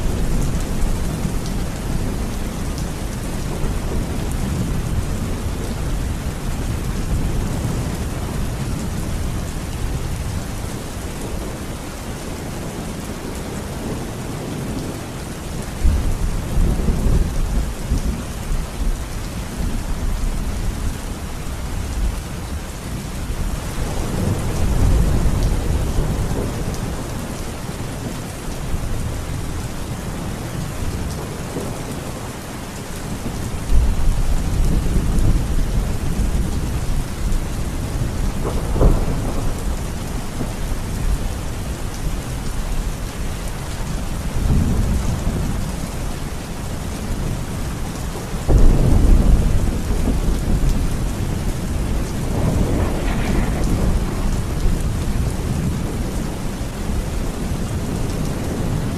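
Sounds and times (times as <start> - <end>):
heavy rain falling: 0.0 - 58.9
thunder rumbling: 33.0 - 46.1, 46.8 - 58.9
thunder crack: 51.8 - 56.1.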